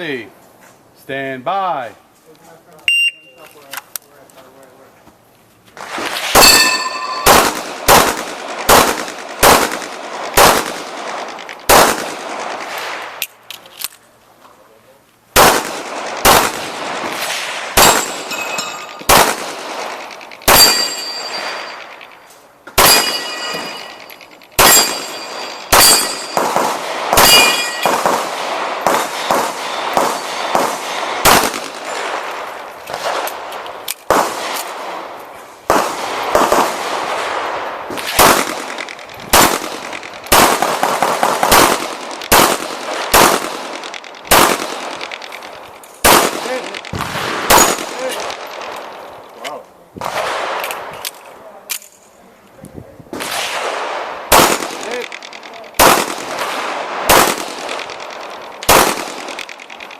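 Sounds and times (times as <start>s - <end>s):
pistol shots: 5.8s - 13.3s, 15.4s - 49.1s, 50.0s - 51.1s, 53.1s - 59.9s
steel targets ringing: 6.4s - 7.6s, 17.8s - 19.1s, 20.5s - 22.0s, 22.8s - 26.6s, 27.2s - 28.0s.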